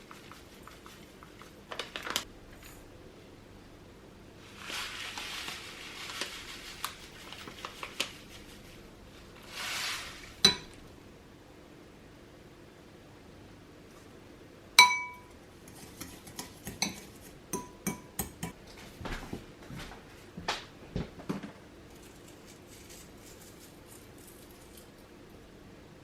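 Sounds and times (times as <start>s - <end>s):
cutlery clinking against bowl: 14.8s - 18.6s.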